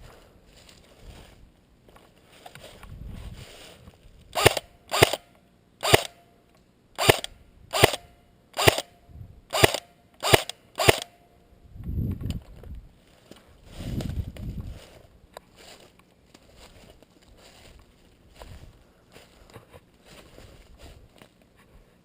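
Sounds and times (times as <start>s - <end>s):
airsoft gun shots: 7.0s - 8.0s, 8.6s - 8.9s, 9.6s - 11.2s.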